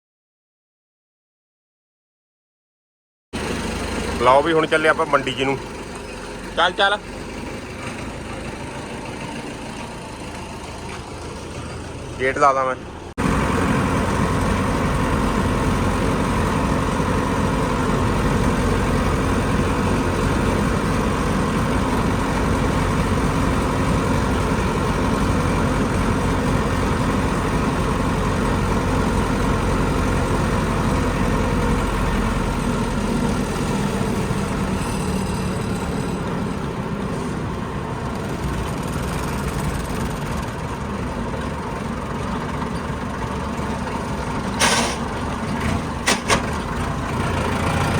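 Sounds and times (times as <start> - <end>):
vehicle engine droning: 3.4 - 47.9.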